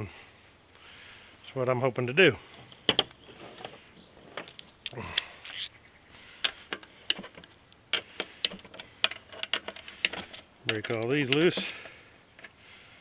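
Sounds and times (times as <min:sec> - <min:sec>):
metal tool clicks and clinks: 0:04.8 - 0:05.7, 0:10.7 - 0:11.5.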